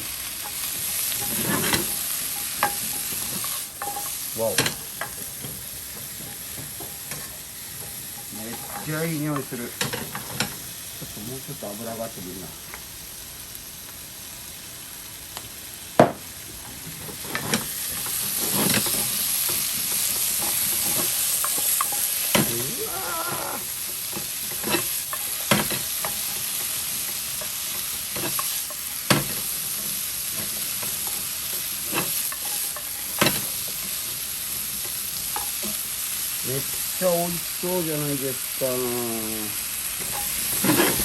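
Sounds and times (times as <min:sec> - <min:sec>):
vegetables sizzling in oil: 0:00.0 - 0:41.0
utensil knocking against pan: 0:16.0 - 0:16.2.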